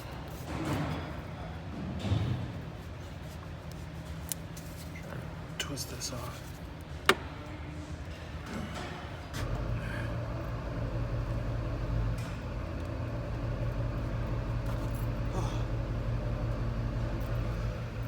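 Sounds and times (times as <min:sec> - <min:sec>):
engine humming: 0:09.3 - 0:18.0.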